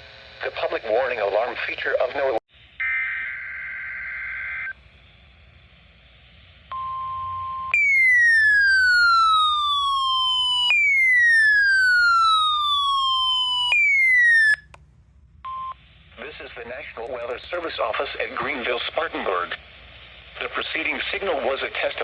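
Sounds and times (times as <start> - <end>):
electronic tone sweeping down: 7.8 - 14.6.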